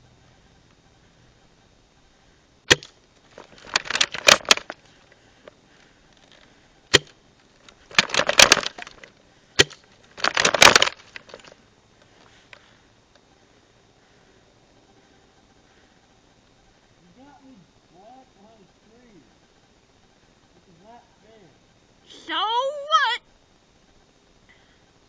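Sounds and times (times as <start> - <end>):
airsoft gun snap: 2.7 - 3.0
rattling crackling clatter: 3.2 - 6.5, 7.5 - 9.2, 9.9 - 11.6.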